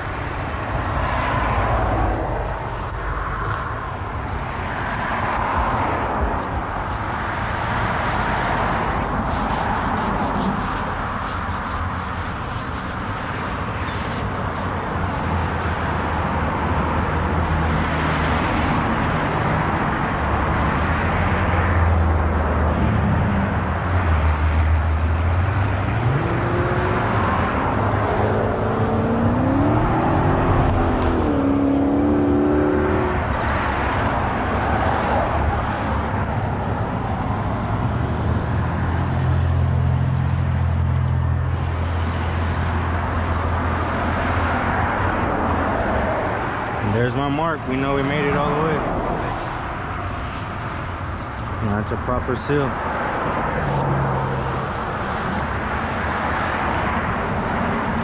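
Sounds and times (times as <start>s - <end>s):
traffic noise: 0.0s - 58.0s
pitched engine rising and falling: 26.0s - 33.3s.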